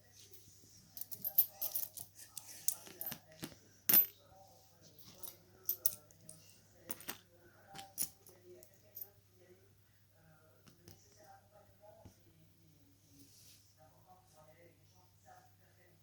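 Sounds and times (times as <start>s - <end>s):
coins clinking: 1.0s - 3.2s, 5.1s - 7.2s, 7.8s - 9.0s.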